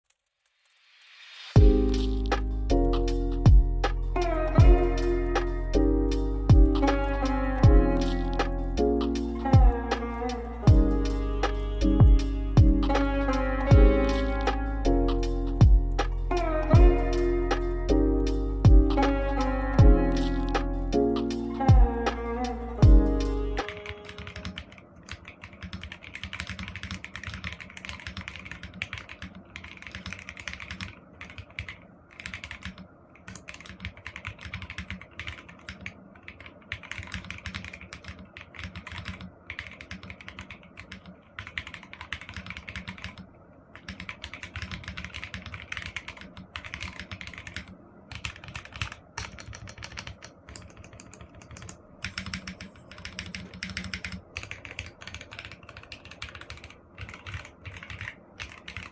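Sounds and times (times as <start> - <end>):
fast mechanical keyboard typing: 20.0 - 20.8, 23.1 - 58.9.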